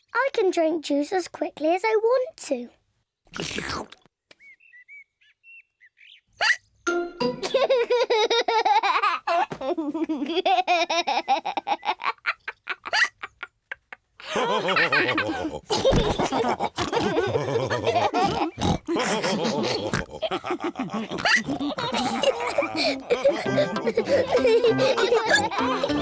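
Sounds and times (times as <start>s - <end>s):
cartoon pigs snorting and oinking: 3.3s - 4.1s, 14.7s - 26.0s.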